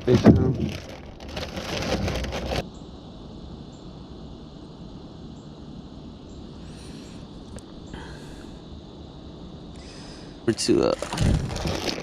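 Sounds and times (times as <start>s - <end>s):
rustling on microphone: 0.0s - 2.7s, 11.0s - 12.0s
faint outdoor hiss: 0.0s - 12.0s.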